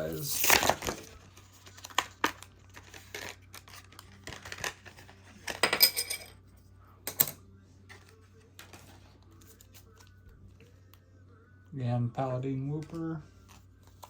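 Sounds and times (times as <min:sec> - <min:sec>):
coin clinking on hard surface: 0:05.4 - 0:06.4.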